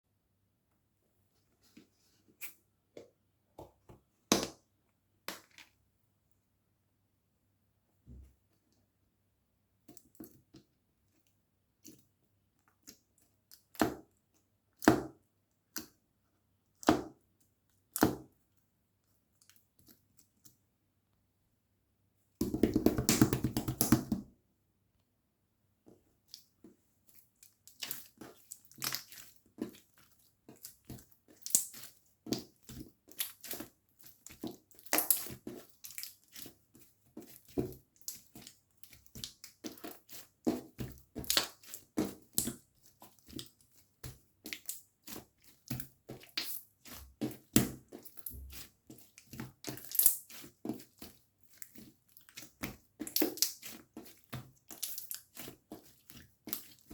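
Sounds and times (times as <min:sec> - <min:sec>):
slime squishing: 0:26.1 - 0:56.9.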